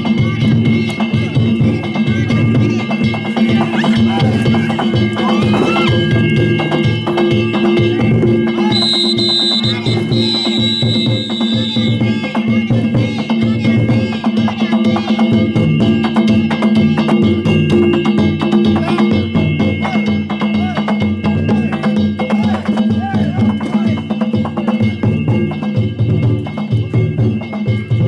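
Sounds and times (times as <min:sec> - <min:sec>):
drums and hand gongs: 0:00.0 - 0:28.0
high steady tone: 0:08.7 - 0:12.0.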